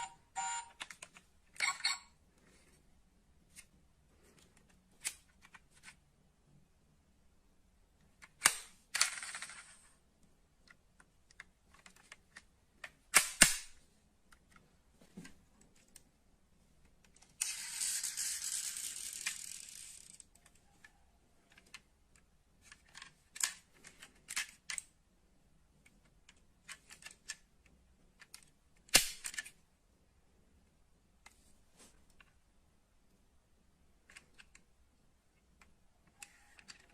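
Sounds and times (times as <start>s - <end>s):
metal model cars clicking: 17.1s - 24.8s.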